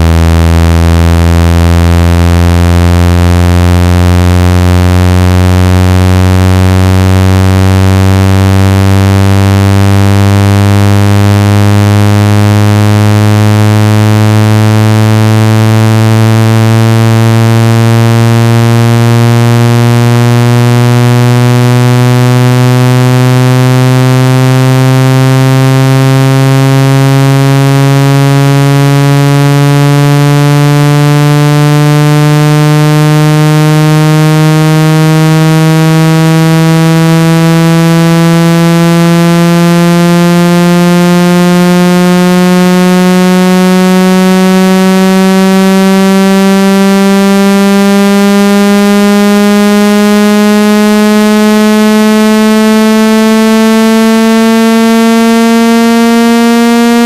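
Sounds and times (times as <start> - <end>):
buzzy tone gliding upward: 3.8 - 46.8.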